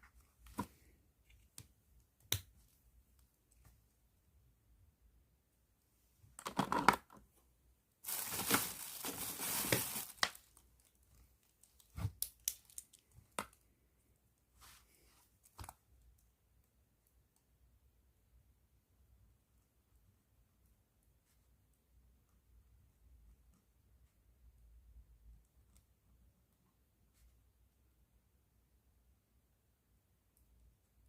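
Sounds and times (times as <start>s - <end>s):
plastic bag crinkling: 8.0s - 13.0s.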